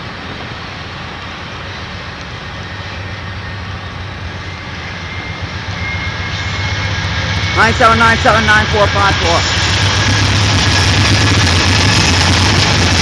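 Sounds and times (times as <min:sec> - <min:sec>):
freight train wheels rumbling: 0:00.0 - 0:13.0.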